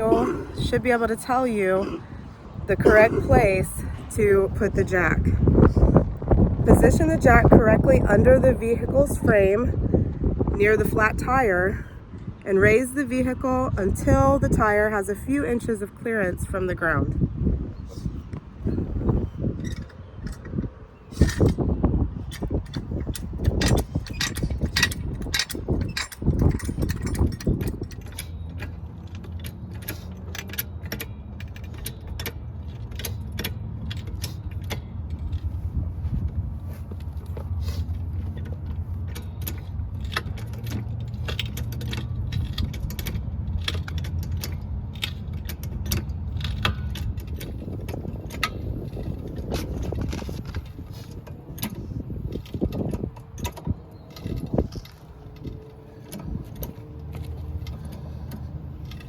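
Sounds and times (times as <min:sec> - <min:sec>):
car jack clicking and rattling: 0:18.6 - 0:59.0.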